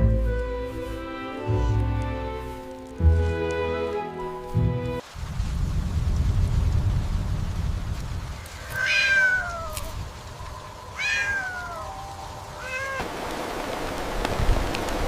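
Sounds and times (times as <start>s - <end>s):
cat meowing: 8.6s - 9.9s, 11.0s - 13.0s.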